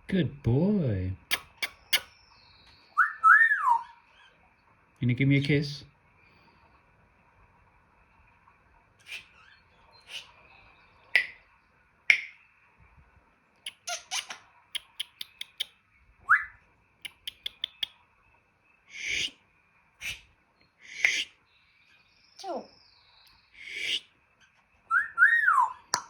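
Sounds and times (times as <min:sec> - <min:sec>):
parrot clicks and pops: 0:12.1 - 0:12.4, 0:17.0 - 0:17.9
parrot breathy hissing: 0:18.9 - 0:19.4, 0:20.0 - 0:21.3, 0:23.6 - 0:24.0.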